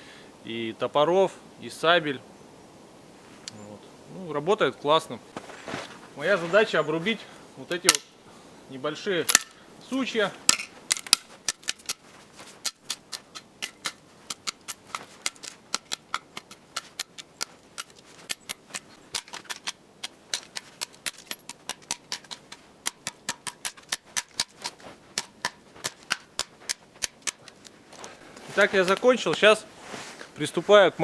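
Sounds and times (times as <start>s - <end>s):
blade chopping dry branches: 9.2s - 29.5s.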